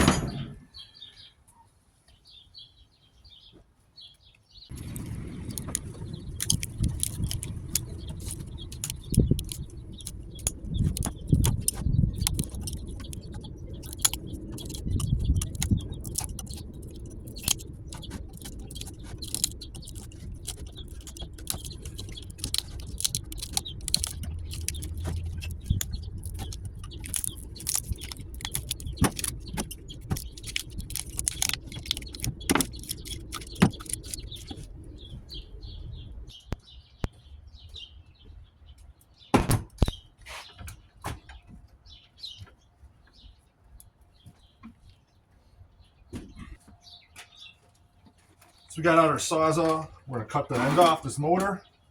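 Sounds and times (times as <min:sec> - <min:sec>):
metal scrap clinking: 0:00.0 - 0:00.6
steady low hum: 0:04.7 - 0:36.6.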